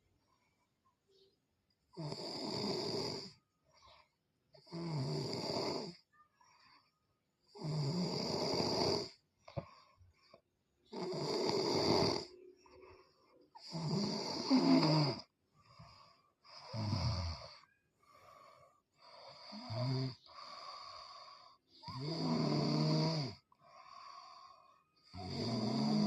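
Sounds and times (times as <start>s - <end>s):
person snoring: 2.0s - 3.4s, 4.6s - 6.0s, 7.5s - 9.2s, 10.9s - 12.8s, 13.6s - 15.3s, 16.5s - 17.7s, 19.0s - 26.0s
faint breaths: 3.1s - 4.7s, 5.8s - 7.7s, 9.0s - 22.1s, 23.2s - 25.2s.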